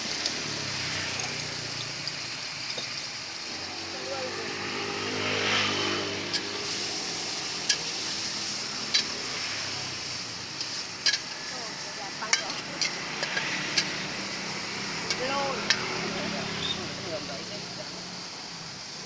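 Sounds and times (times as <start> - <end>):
noodles sizzling in a wok: 0.0 - 19.0
metal spatula clanking on wok: 12.3 - 13.9.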